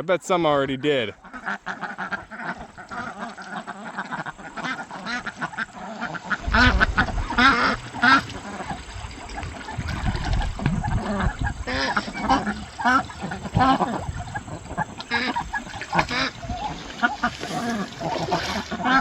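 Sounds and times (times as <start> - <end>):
ducks quacking: 0.0 - 19.0
low rumble: 6.4 - 9.2.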